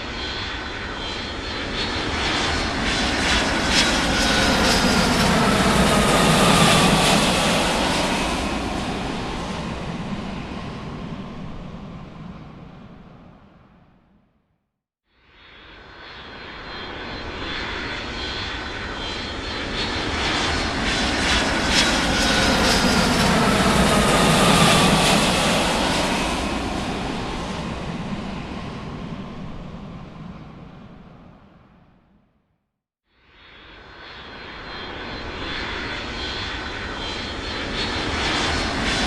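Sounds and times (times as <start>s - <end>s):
aircraft flying overhead: 0.0s - 14.2s, 15.3s - 32.3s, 33.2s - 39.0s.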